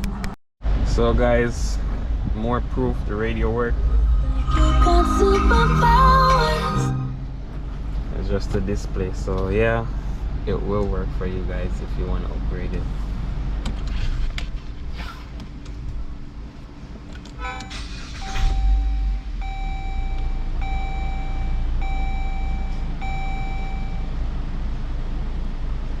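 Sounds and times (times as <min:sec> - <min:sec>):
low rumble: 0:00.0 - 0:10.6
car warning chime tones: 0:17.4 - 0:24.2
repeating beep: 0:17.6 - 0:24.1.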